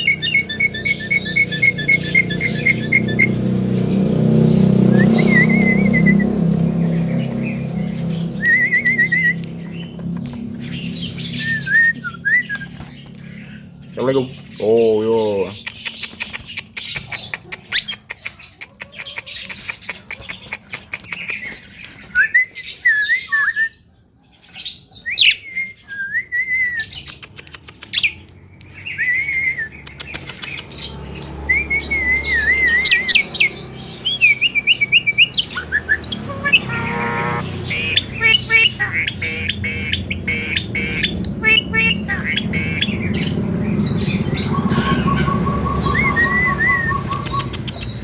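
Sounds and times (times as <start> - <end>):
harsh buzzy bird call: 0.0 - 6.5, 31.7 - 47.8
myna chattering: 35.7 - 43.6.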